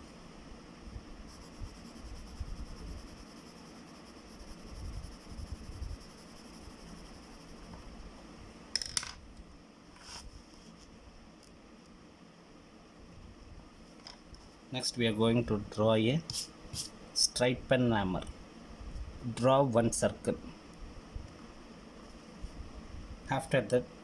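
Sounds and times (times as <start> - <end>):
small hard object clattering: 8.8 - 9.2.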